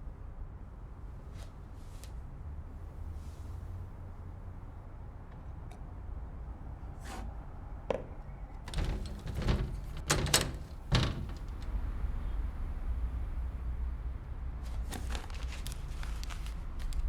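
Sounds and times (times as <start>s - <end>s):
sharp knocks and clunks: 8.7s - 11.8s.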